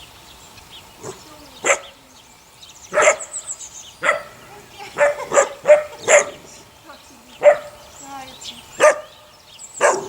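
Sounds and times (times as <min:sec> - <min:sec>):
puppies barking: 0:01.0 - 0:02.0, 0:02.9 - 0:10.0
puppies yipping: 0:02.9 - 0:06.7, 0:07.4 - 0:10.0.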